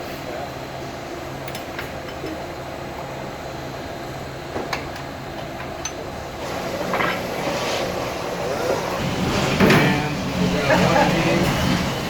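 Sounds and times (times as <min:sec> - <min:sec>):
carousel motor hum: 0:05.1 - 0:12.0.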